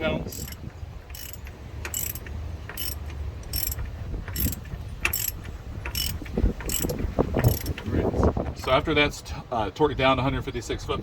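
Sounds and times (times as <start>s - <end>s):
ratchet wrench clicking: 0.3s - 7.9s.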